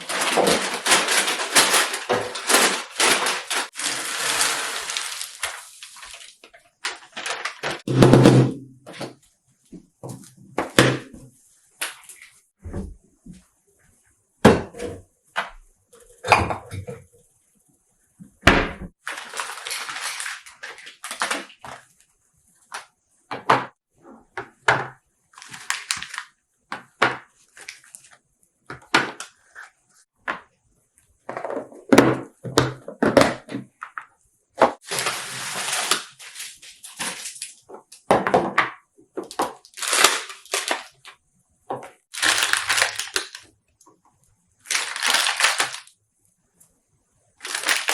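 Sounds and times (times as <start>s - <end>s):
plastic packaging crinkling: 0.0s - 7.9s, 19.0s - 21.9s, 25.4s - 26.3s, 34.8s - 37.7s, 39.2s - 41.2s, 42.1s - 43.5s, 44.6s - 45.9s, 47.4s - 47.9s.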